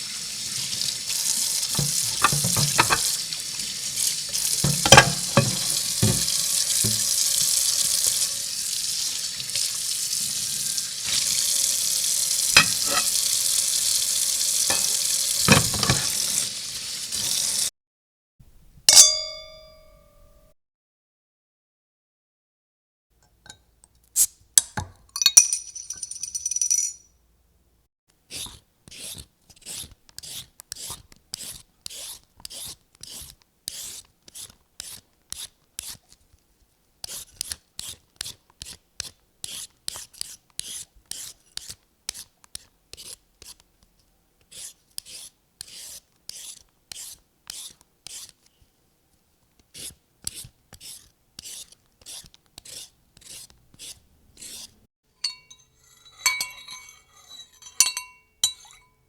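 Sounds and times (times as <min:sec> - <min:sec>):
rasping scraping strokes: 0:01.2 - 0:03.2, 0:04.3 - 0:08.4, 0:12.6 - 0:13.2, 0:49.8 - 0:54.8
bright metallic ring: 0:18.9 - 0:20.5, 0:55.2 - 0:59.0.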